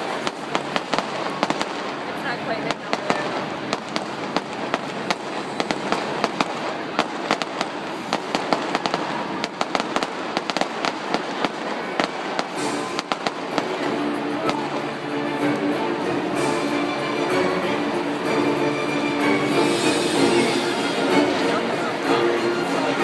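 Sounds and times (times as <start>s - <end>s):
fireworks bangs and crackling: 0.0s - 23.0s
music with held notes: 12.2s - 23.0s.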